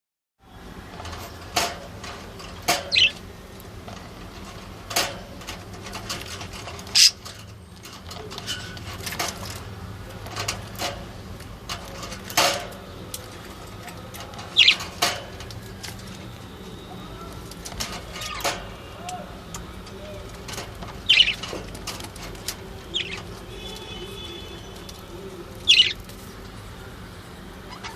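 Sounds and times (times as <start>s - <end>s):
small birds chirping: 2.6s - 3.3s, 6.8s - 7.3s, 12.8s - 26.2s.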